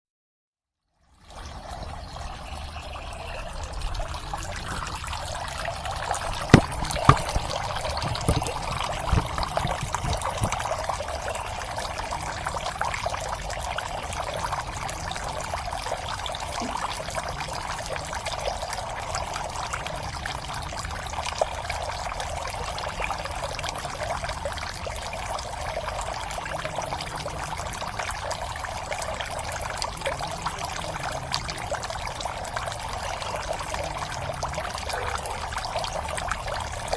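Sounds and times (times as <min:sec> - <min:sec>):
water trickling into pond: 0:01.1 - 0:36.9
sharp knocks or splashes: 0:06.1 - 0:10.6.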